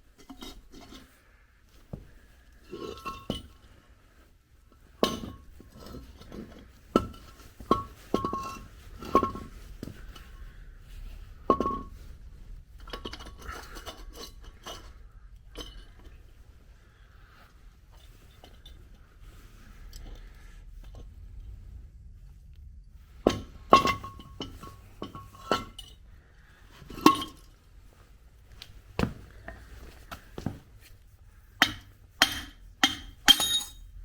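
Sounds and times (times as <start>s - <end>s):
metal parts clinking: 32.3s - 33.9s.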